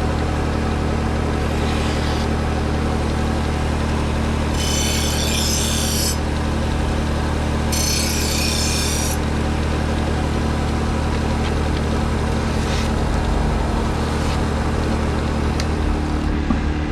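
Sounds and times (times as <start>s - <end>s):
belt sharpener motor hum: 1.4s - 2.5s, 3.6s - 9.9s
blade grinding on abrasive belt: 4.5s - 6.9s, 7.6s - 9.3s.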